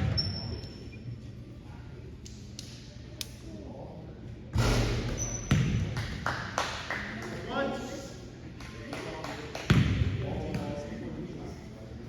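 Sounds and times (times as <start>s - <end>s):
basketball bouncing on hardwood floor: 5.5s - 5.8s.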